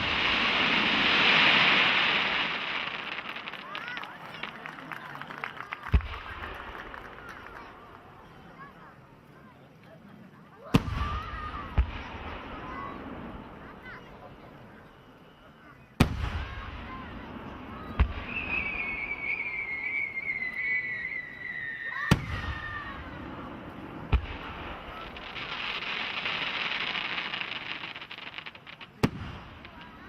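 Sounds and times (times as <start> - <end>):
falling firework whistle: 0.0 - 4.4, 10.8 - 28.4
firework crackling: 0.0 - 9.4, 16.0 - 30.0.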